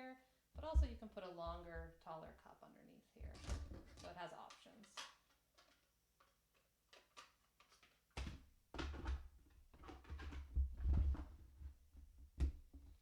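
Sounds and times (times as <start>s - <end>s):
dull thumps: 0.6s - 2.1s
coffee maker being handled: 3.2s - 11.8s.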